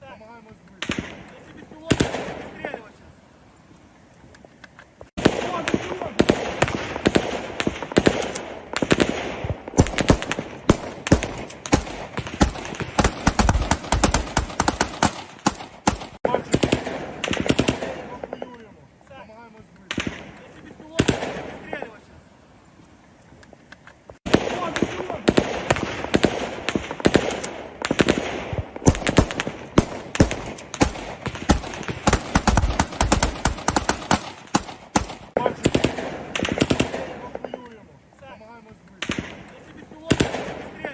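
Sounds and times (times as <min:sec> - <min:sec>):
small-arms gunfire: 0:00.8 - 0:02.8, 0:05.2 - 0:18.6, 0:19.9 - 0:20.4, 0:21.0 - 0:21.8, 0:24.2 - 0:37.7, 0:39.0 - 0:40.9.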